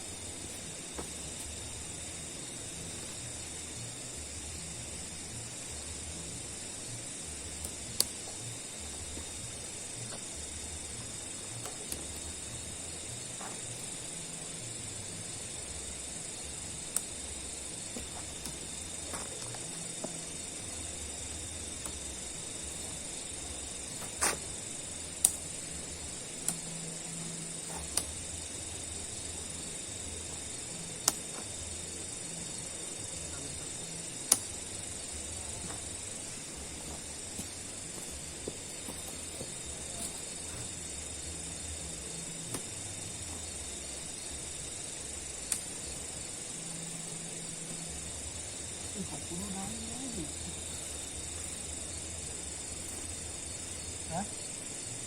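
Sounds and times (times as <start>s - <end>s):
insects trilling: 0.0s - 55.0s.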